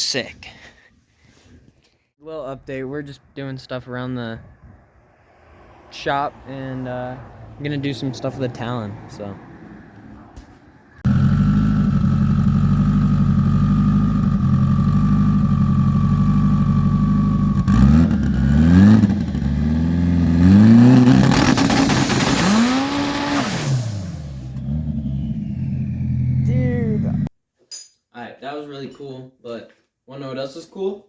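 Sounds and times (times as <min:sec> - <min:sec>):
turbocharged engine revving: 0:11.0 - 0:27.3.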